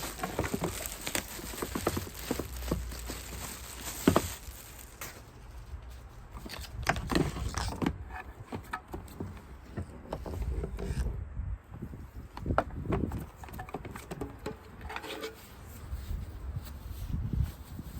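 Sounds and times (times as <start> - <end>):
packaging rustling: 0.0 - 7.8
clicks and knocks of handling: 6.4 - 11.0, 12.3 - 15.4.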